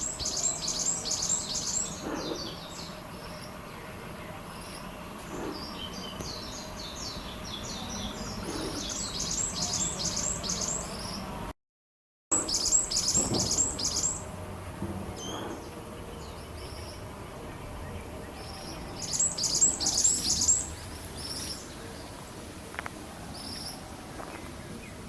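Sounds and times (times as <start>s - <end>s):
bird chirping rapidly: 0.0s - 3.6s, 4.5s - 11.3s, 12.3s - 14.3s, 18.1s - 21.7s.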